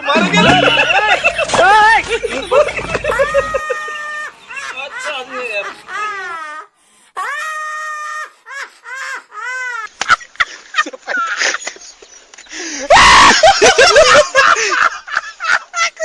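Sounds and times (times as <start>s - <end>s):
screaming cries: 2.9s - 9.9s, 12.9s - 13.8s
person wailing in mock grief: 12.9s - 13.6s.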